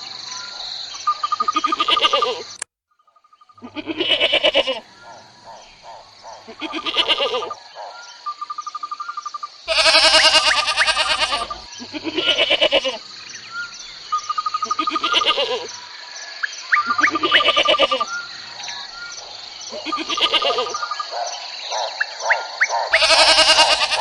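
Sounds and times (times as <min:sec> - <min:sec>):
goats or sheep bleating: 0:03.6 - 0:04.8, 0:06.5 - 0:07.6, 0:09.7 - 0:13.0, 0:14.7 - 0:15.7, 0:16.9 - 0:18.1, 0:19.8 - 0:20.8, 0:23.0 - 0:24.0.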